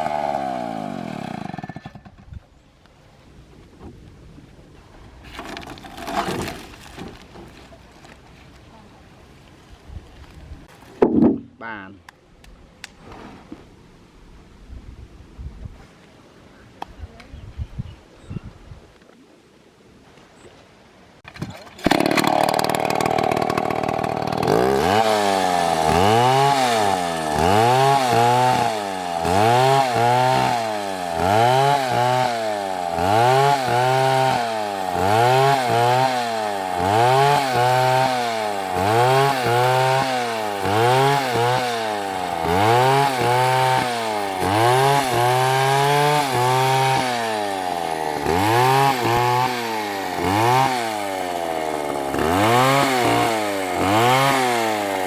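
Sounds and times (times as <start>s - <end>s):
chainsaw cutting wood: 0.0s - 2.3s, 5.4s - 7.2s, 21.3s - 55.0s.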